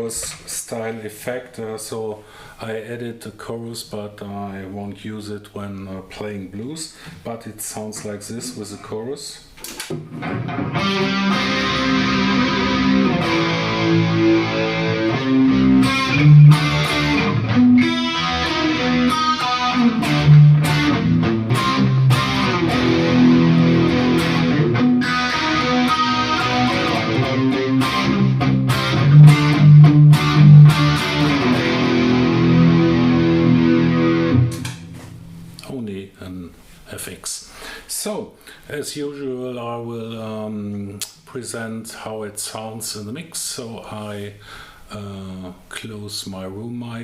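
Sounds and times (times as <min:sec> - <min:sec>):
distorted electric guitar chords: 0:09.9 - 0:35.6.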